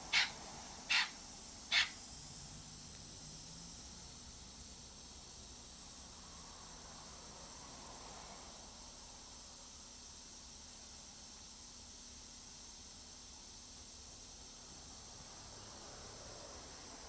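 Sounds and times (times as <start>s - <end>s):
bird chirps: 0.1s - 1.1s, 1.7s - 2.0s.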